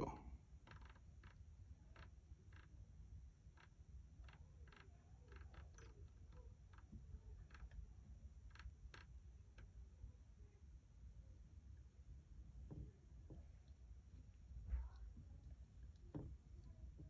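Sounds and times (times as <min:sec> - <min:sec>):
faint small clicks: 0:03.5 - 0:09.8.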